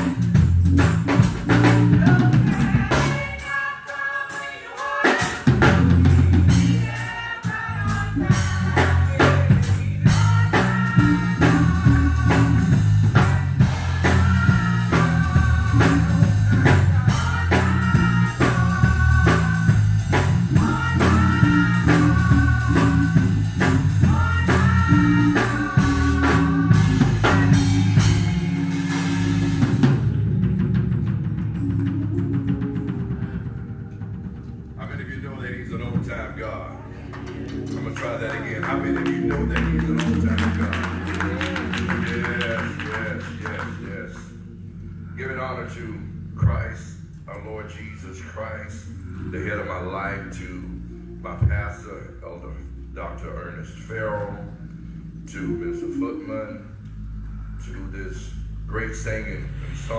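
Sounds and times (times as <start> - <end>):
bass line: 0.0 - 3.6, 5.2 - 59.9
drum kit beat: 0.0 - 36.4, 37.0 - 44.4
ensemble singing: 0.0 - 59.9
cymbals washing: 7.9 - 35.4.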